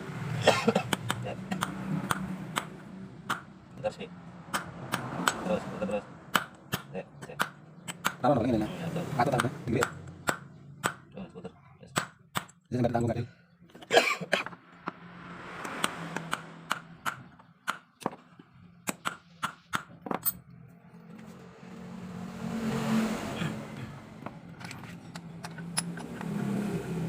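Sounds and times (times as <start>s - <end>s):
sharp irregular taps: 0.8s - 3.5s, 4.5s - 5.4s, 6.3s - 8.2s, 9.4s - 11.1s, 15.6s - 20.0s.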